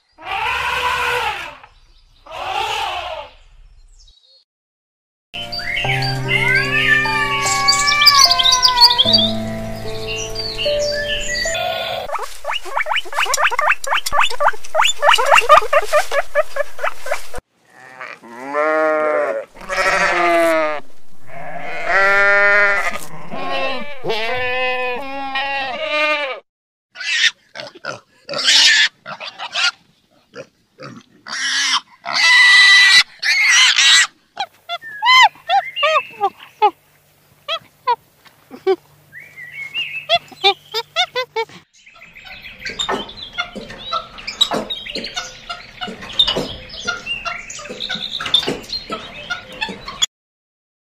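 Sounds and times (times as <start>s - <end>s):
harsh noisy animal calls: 0.2s - 1.7s, 2.3s - 3.4s
drawn-out pitched animal calls: 11.4s - 26.4s
rapid pulsed animal calls: 11.5s - 17.4s.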